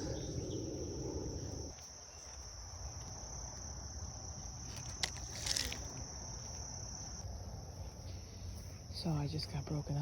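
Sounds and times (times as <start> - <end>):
crickets trilling: 0.0 - 10.0.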